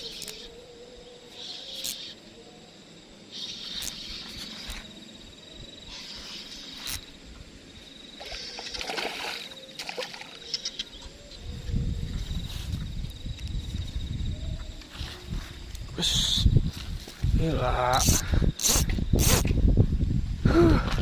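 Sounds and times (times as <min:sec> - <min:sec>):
insects buzzing: 0:00.0 - 0:21.0.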